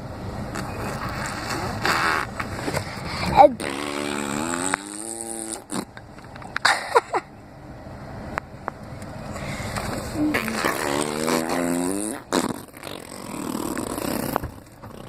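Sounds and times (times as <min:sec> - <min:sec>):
baby blowing raspberries: 0:00.5 - 0:05.9, 0:10.2 - 0:15.0
baby vocal sound: 0:03.1 - 0:04.1, 0:10.2 - 0:11.7.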